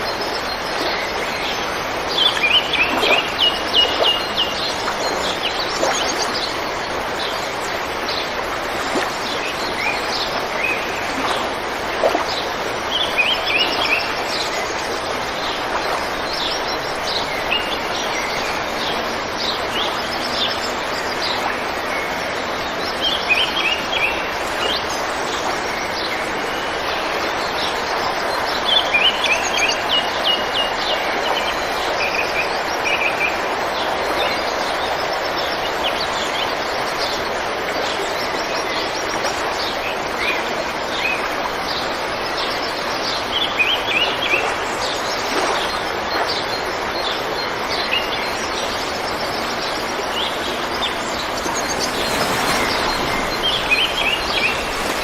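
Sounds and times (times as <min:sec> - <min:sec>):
river water flowing: 0:00.0 - 0:55.0
birds chirping: 0:43.0 - 0:55.0.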